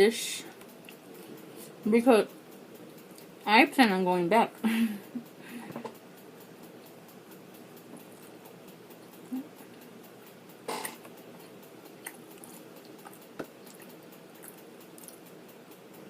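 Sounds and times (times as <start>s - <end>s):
person chewing: 10.6s - 15.2s
wet mouth clicks and smacks: 12.0s - 15.2s.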